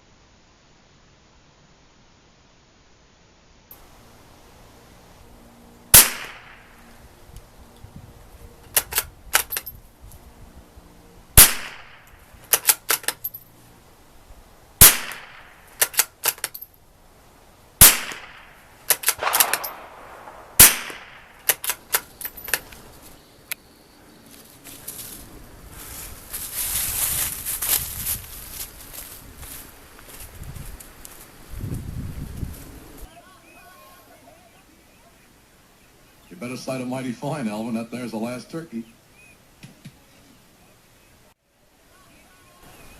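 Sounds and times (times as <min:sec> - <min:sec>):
rifle shots: 0:05.9 - 0:07.0, 0:11.4 - 0:13.2, 0:14.8 - 0:16.5, 0:17.8 - 0:22.4
rifle bolt clicking: 0:08.7 - 0:09.7, 0:12.5 - 0:13.3, 0:15.8 - 0:16.6, 0:18.9 - 0:22.8.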